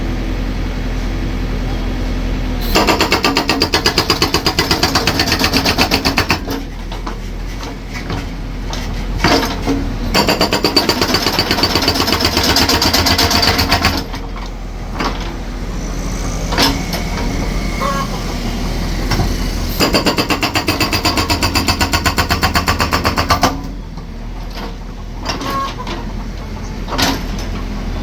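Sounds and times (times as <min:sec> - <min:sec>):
engine running: 0:00.0 - 0:28.0
concrete breaker hammering: 0:02.7 - 0:23.7.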